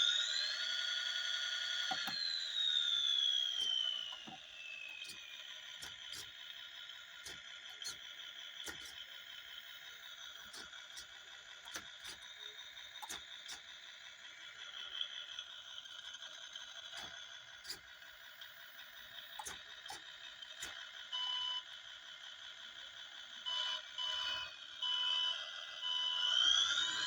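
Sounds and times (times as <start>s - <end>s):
simulated diesel engine through small speaker: 0.0s - 27.0s
sharp clicks: 16.9s - 20.8s
reversing alarm beeps: 21.1s - 21.7s, 23.4s - 27.0s.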